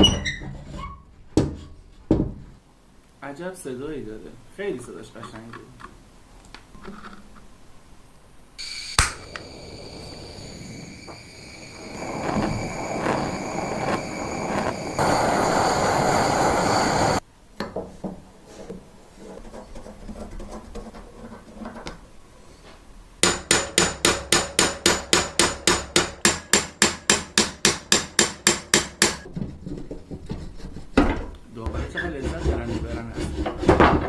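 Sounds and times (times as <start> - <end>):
loud steady noise with tones: 8.6 - 17.2.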